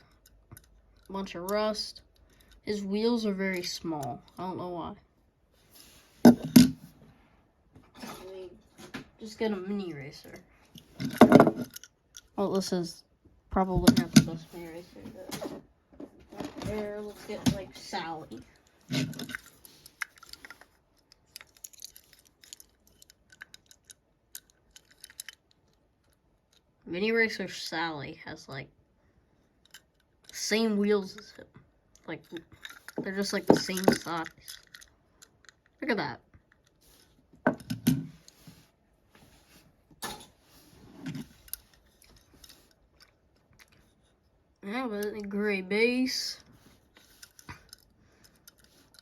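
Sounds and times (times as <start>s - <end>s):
toy cars clicking and rattling: 0.0s - 4.5s, 10.2s - 12.4s, 16.4s - 26.8s, 29.5s - 37.8s, 46.1s - 49.0s.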